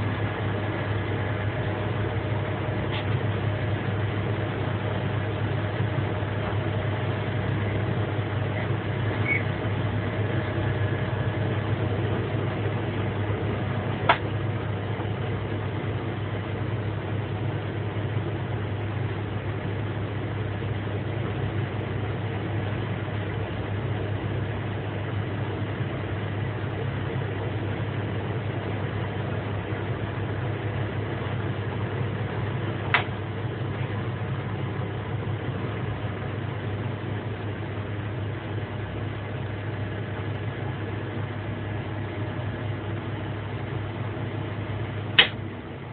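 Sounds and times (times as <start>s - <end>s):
electric train running hum: 0.0s - 45.9s
sharp click: 32.9s - 33.1s, 45.2s - 45.4s.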